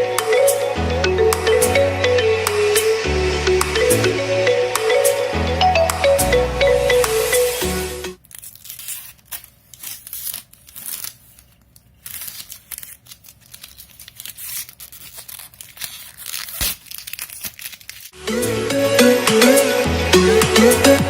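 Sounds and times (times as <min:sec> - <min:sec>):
song: 0:00.0 - 0:08.2, 0:18.2 - 0:21.0
packaging crinkling and tearing: 0:08.2 - 0:18.2.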